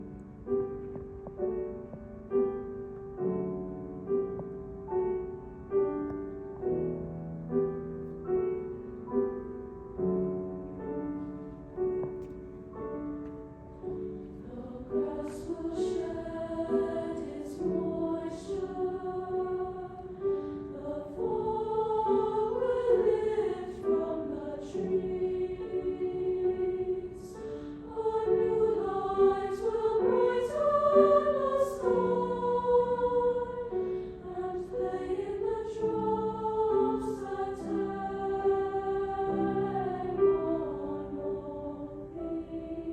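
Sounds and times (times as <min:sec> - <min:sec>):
piano accompaniment: 0:00.0 - 0:42.9
choir singing: 0:10.7 - 0:42.9.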